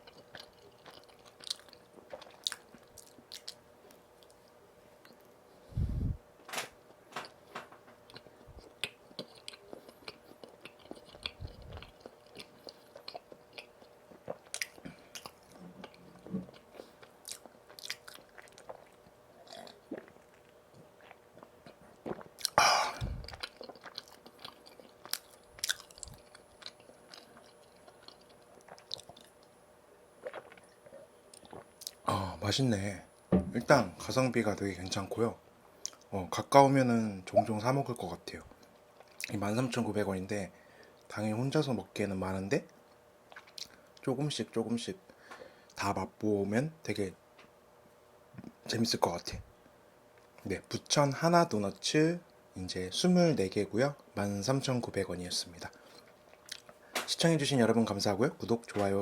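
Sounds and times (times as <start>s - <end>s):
chewing with wet mouth clicks: 0.0s - 5.3s, 8.1s - 29.6s, 30.2s - 32.0s, 43.3s - 44.1s, 56.0s - 56.8s.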